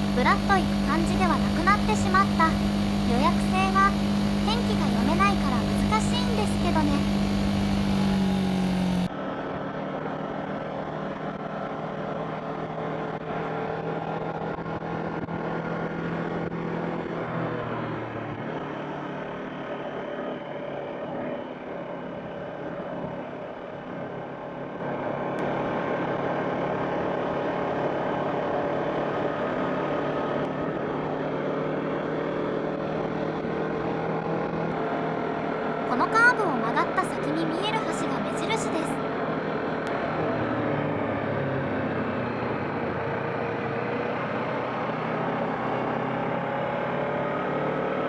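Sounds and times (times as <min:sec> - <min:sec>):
motorcycle engine cruising: 0:00.0 - 0:09.1.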